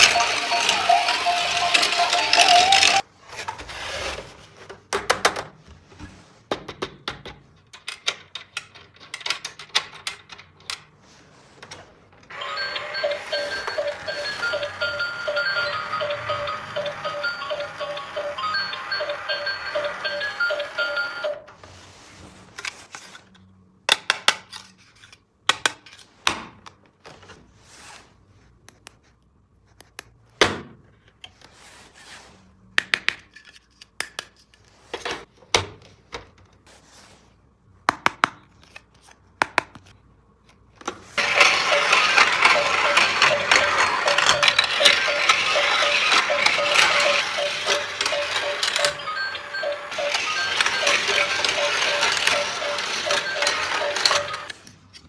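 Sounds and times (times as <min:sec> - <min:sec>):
plastic toy track clicks: 0:00.0 - 0:03.0, 0:40.8 - 0:54.6.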